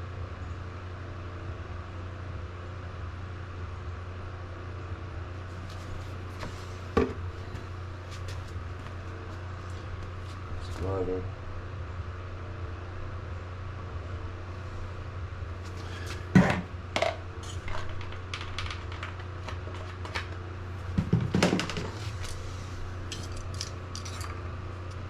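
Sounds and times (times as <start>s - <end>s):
steady low hum: 0.0s - 25.0s
louder knocks: 16.3s - 17.1s, 21.0s - 22.0s
clinks of small hard objects: 23.1s - 25.0s.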